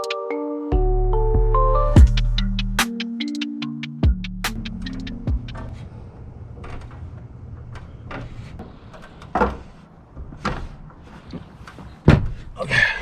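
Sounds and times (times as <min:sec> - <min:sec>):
work knocks and clunks: 0:06.6 - 0:12.6.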